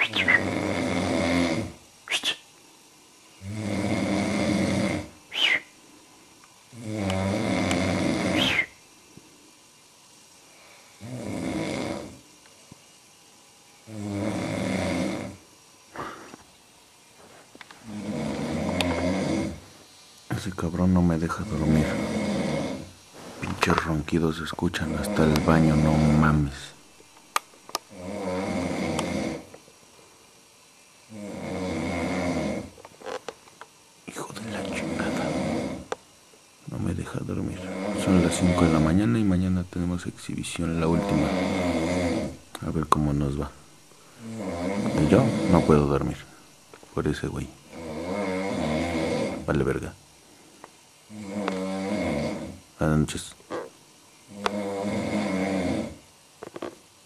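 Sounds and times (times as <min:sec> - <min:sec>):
man snoring heavily: 0:00.0 - 0:01.8, 0:03.4 - 0:05.6, 0:06.7 - 0:08.7, 0:11.0 - 0:12.2, 0:13.8 - 0:15.4, 0:17.8 - 0:19.6, 0:21.3 - 0:23.7, 0:24.7 - 0:26.8, 0:27.9 - 0:29.5, 0:31.1 - 0:32.8, 0:34.4 - 0:35.9, 0:36.7 - 0:39.3, 0:40.6 - 0:43.6, 0:44.2 - 0:46.4, 0:47.6 - 0:49.6, 0:51.1 - 0:52.7, 0:54.3 - 0:56.1.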